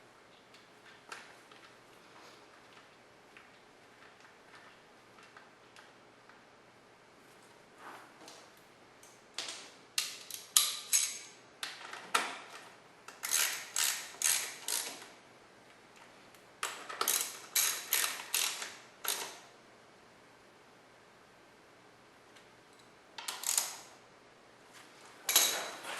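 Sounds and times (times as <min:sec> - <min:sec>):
ratchet wrench rasping: 0:13.2 - 0:15.0, 0:17.1 - 0:19.2.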